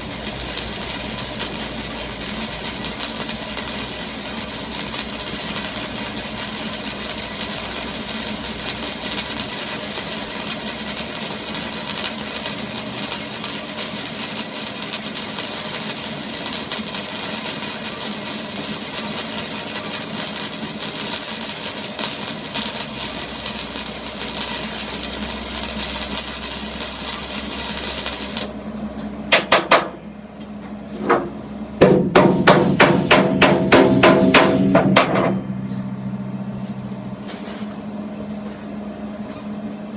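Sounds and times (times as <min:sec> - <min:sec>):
harsh crackling noise: 0:00.0 - 0:28.6
separate strikes: 0:31.8 - 0:36.0.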